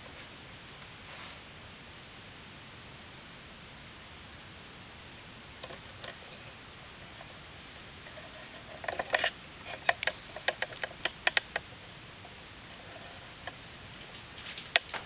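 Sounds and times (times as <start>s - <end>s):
faint steady hiss: 0.0s - 15.0s
sharp irregular clicks: 8.7s - 11.7s.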